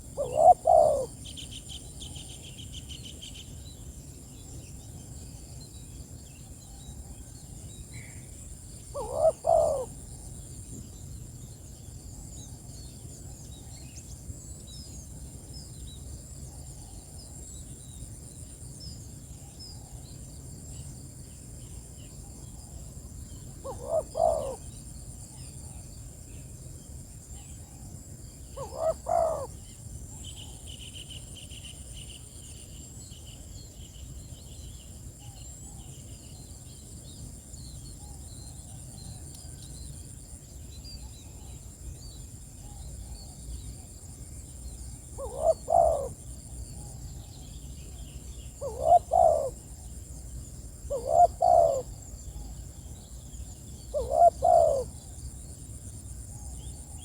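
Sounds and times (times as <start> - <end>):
dove cooing: 0.0 - 1.2, 8.9 - 10.0, 23.6 - 24.7, 28.6 - 29.6, 45.2 - 46.2, 48.6 - 49.6, 50.9 - 51.9, 53.9 - 54.9.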